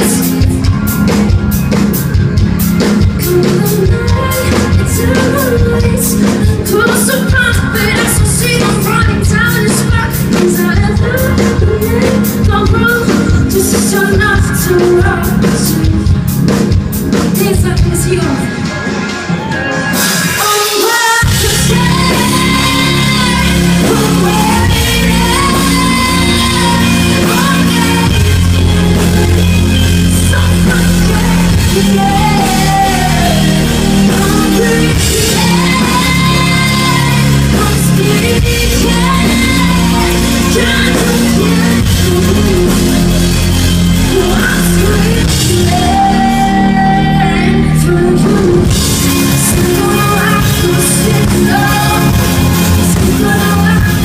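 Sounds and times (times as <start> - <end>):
woman singing: 0.0 - 1.4, 2.8 - 16.5, 17.1 - 18.6, 20.3 - 54.0
drums: 0.0 - 54.0
rock band playing live: 0.0 - 54.0
sustained bass and synth: 21.3 - 54.0.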